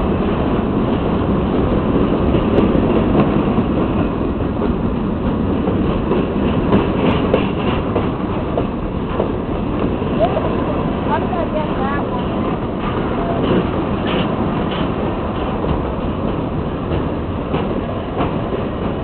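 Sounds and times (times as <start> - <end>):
train wheels rumbling on rails: 0.0 - 19.0.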